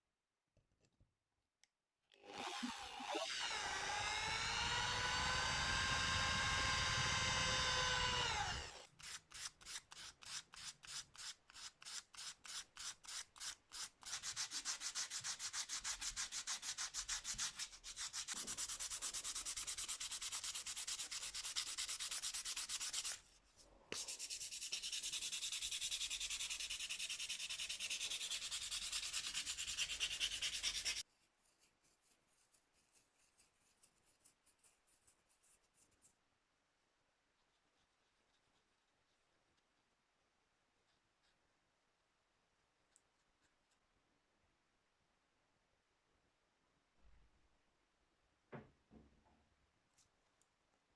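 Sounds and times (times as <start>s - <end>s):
power tool motor whining: 2.2s - 8.8s
hand-sanding strokes: 8.2s - 36.0s.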